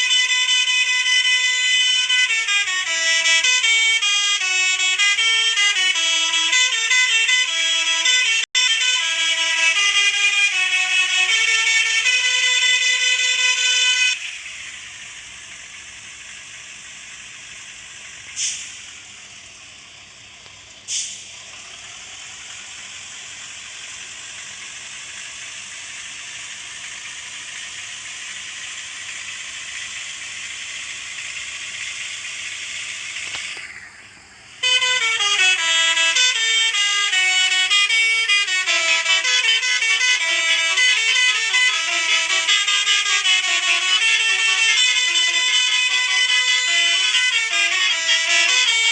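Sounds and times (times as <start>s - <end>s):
horn playing a multi-tone melody: 0.0s - 15.0s, 34.6s - 48.9s
rushing noise: 12.8s - 35.7s.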